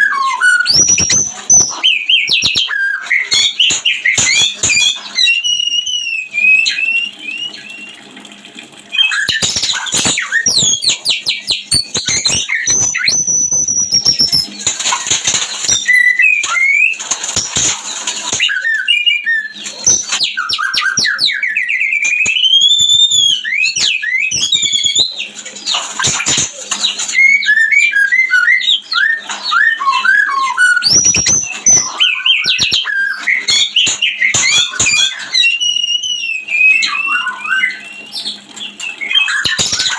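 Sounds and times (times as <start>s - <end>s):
bird singing varied song: 0.0s - 7.9s, 26.9s - 39.9s.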